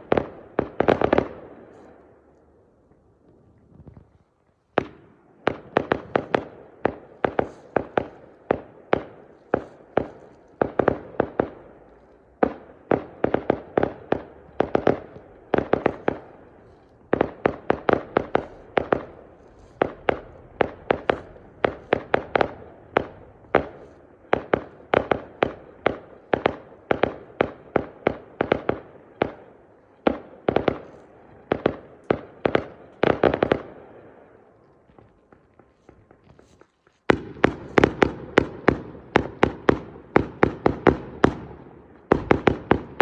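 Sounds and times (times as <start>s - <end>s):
fireworks bangs and crackles: 0.0s - 2.2s, 3.3s - 43.0s.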